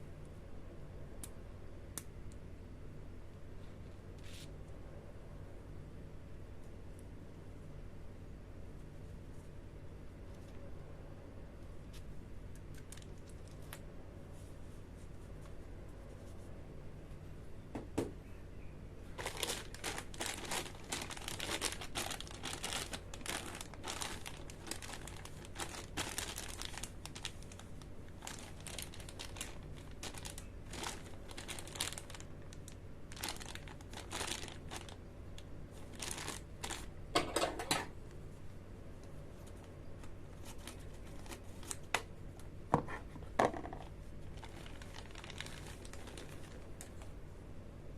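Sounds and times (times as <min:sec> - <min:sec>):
packaging crinkling: 0:11.9 - 0:13.8, 0:19.1 - 0:37.7, 0:39.4 - 0:42.1, 0:43.6 - 0:47.2.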